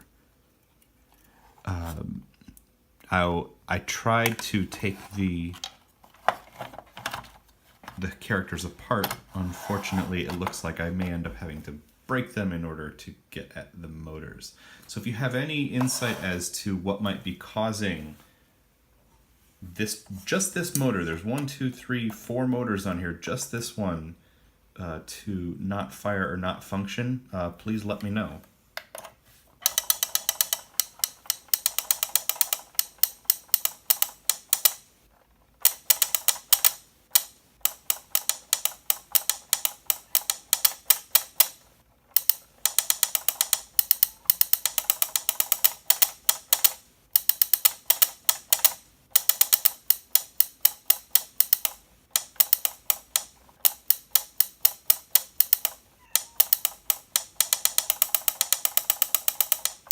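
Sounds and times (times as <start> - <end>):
alarm clock drummer arms clicking: 29.6 - 34.8, 35.6 - 59.9.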